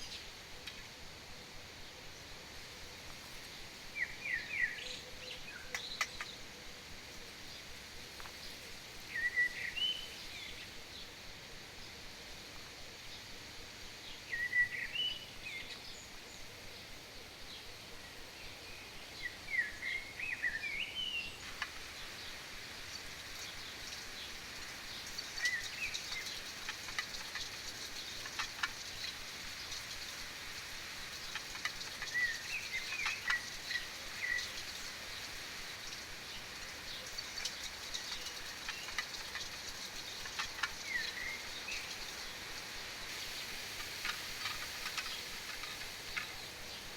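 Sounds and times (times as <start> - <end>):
faint ticks: 0.0 - 1.0, 5.2 - 11.5, 21.4 - 46.9
steady high hiss: 0.0 - 46.9
birds chirping: 1.8 - 46.9.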